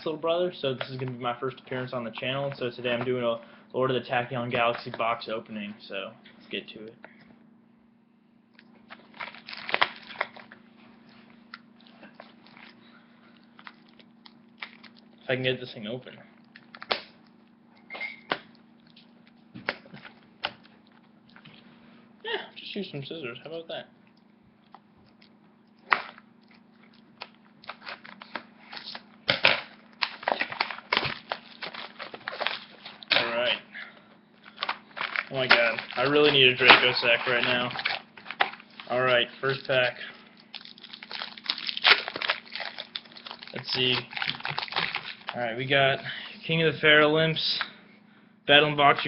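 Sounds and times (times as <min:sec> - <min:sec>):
plastic wrap crinkling: 0:08.7 - 0:15.2, 0:24.7 - 0:33.6, 0:34.4 - 0:45.6.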